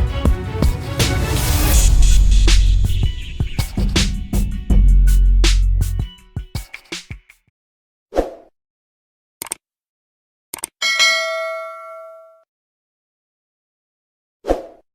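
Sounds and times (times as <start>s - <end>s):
quick clicks: 9.4s - 9.6s
bright bell ding: 10.8s - 12.4s.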